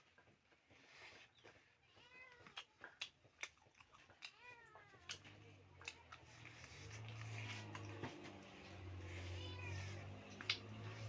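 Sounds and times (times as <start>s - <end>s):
cat meowing: 8.6s - 11.0s.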